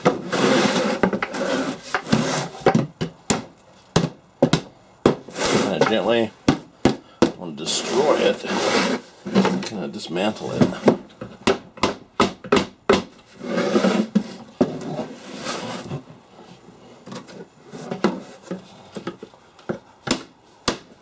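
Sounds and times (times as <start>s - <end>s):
wood scraping: 0.0s - 11.6s, 12.5s - 19.8s
hammer tapping on wood: 5.8s - 7.4s, 11.4s - 13.1s.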